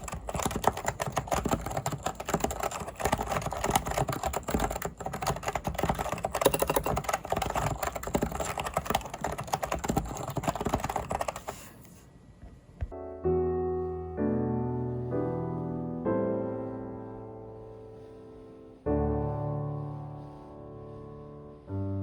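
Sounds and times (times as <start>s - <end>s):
fast keyboard typing: 0.0s - 11.8s.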